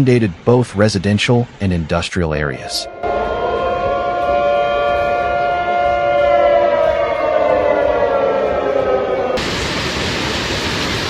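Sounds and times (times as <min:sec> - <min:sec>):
warning siren: 0:02.6 - 0:09.8.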